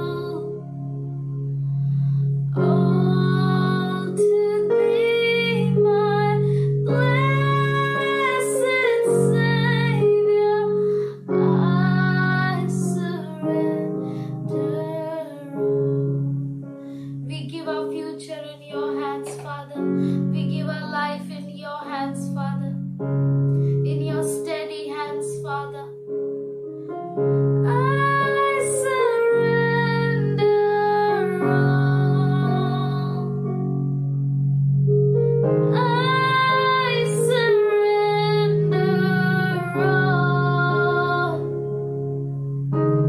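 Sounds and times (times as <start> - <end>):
woman singing: 0.0 - 0.6, 2.5 - 16.2, 17.2 - 22.8, 23.8 - 26.0, 27.6 - 33.4, 35.7 - 41.7
sustained keyboard chords: 0.0 - 43.0.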